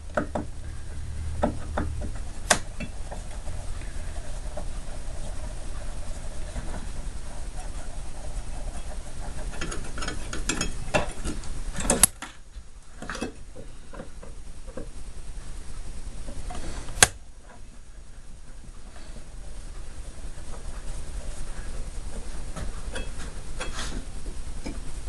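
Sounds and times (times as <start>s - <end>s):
sharp snap: 16.9s - 17.2s.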